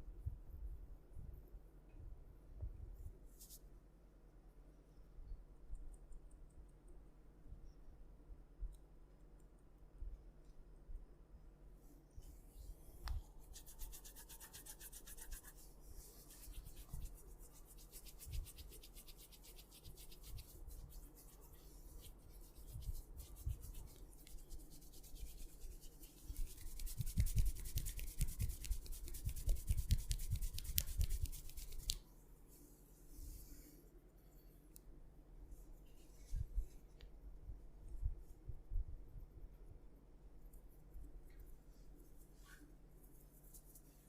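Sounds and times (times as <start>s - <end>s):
hands rubbing hair: 3.4s - 3.6s, 12.2s - 33.7s, 41.4s - 44.0s.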